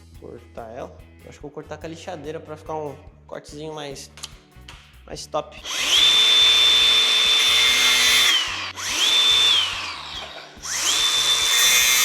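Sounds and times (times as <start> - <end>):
angle grinder cutting plastic: 5.6 - 12.0.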